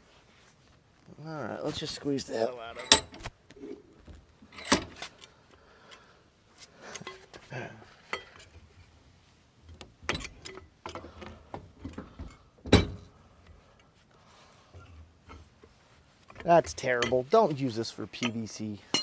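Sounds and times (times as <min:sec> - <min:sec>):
metal clanks and clicks: 0:04.5 - 0:05.1, 0:18.2 - 0:19.0
pipe wrench on pipe: 0:18.2 - 0:19.0.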